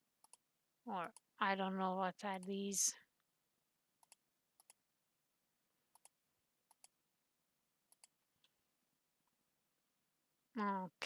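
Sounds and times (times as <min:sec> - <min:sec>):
computer mouse clicks: 0:00.2 - 0:00.4, 0:04.0 - 0:04.8, 0:05.9 - 0:07.0, 0:07.9 - 0:08.5.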